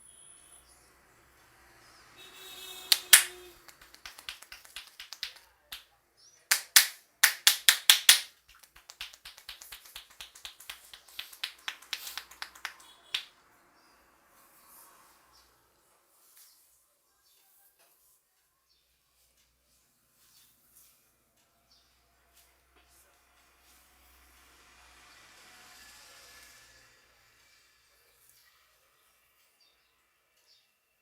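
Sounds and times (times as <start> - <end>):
hands cracking during massage: 2.9 - 5.8, 6.5 - 13.3.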